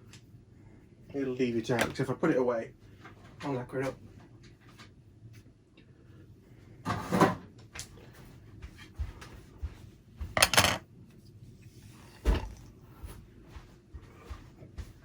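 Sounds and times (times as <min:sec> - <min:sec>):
tools clattering on workbench: 0:10.4 - 0:10.8.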